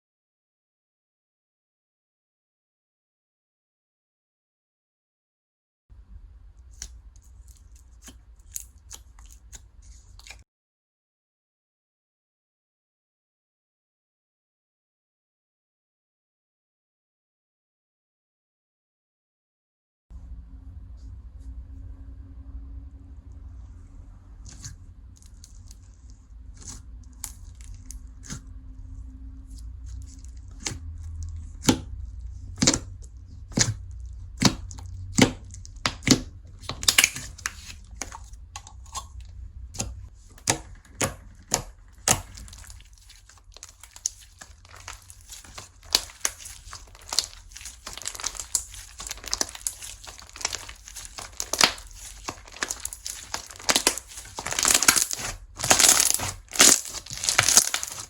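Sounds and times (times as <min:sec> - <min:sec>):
slime popping and crackling: 0:24.5 - 0:28.4, 0:29.9 - 0:39.1, 0:39.8 - 0:58.0
slime being squeezed: 0:32.6 - 0:39.1, 0:39.8 - 0:58.0.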